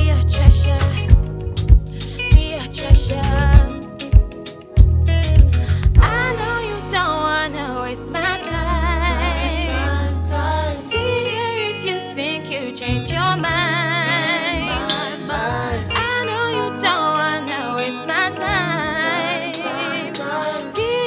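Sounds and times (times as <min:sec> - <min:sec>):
deep bass notes: 0:00.0 - 0:11.5, 0:14.6 - 0:16.1
soul band playing: 0:00.0 - 0:21.0
person singing vocal runs: 0:18.4 - 0:21.0.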